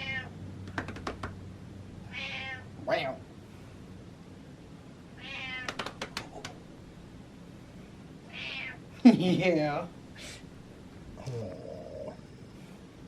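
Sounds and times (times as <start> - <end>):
cat meowing: 0.0 - 0.3, 2.1 - 3.2, 5.2 - 5.8, 8.3 - 8.8
sharp clicks: 5.7 - 6.6.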